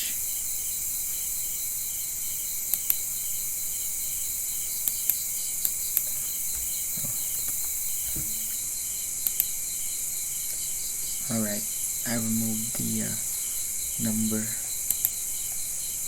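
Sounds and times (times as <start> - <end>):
crickets chirping: 0.0 - 16.0
steady high hiss: 0.0 - 16.0
sharp clicks: 2.7 - 3.1, 4.8 - 8.6, 9.2 - 9.6, 14.0 - 15.6.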